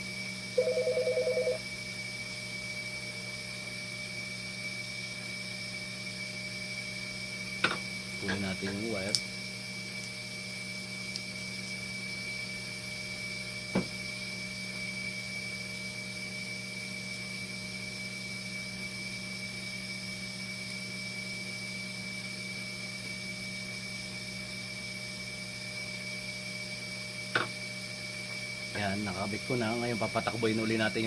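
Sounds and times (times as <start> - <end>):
equipment humming with high whine: 0.0 - 31.0.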